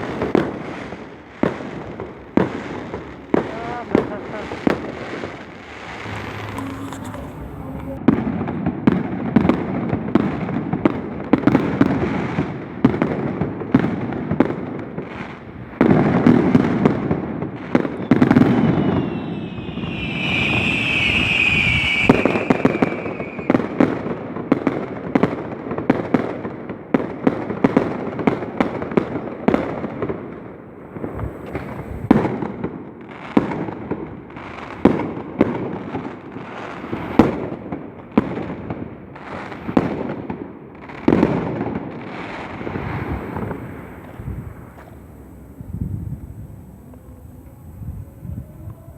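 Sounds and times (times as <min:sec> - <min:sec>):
firecrackers cracking and banging: 0:00.0 - 0:48.9
high falling whistle: 0:05.8 - 0:08.0, 0:18.3 - 0:23.5.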